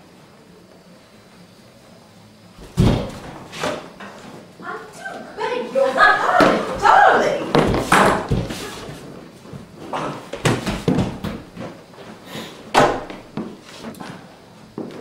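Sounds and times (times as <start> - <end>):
knocks and thuds on a stage: 2.6 - 3.5, 7.5 - 8.6, 10.4 - 11.6, 12.7 - 13.3.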